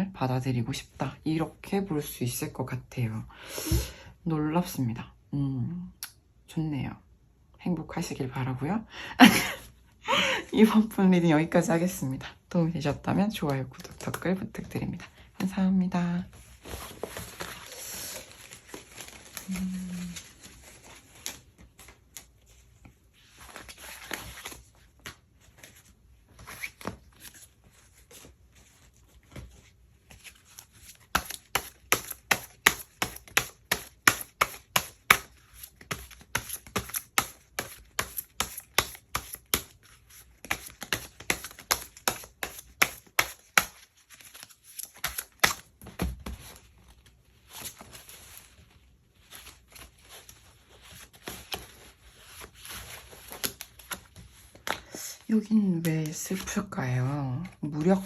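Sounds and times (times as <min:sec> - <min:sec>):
cards shuffling: 0:16.6 - 0:48.6.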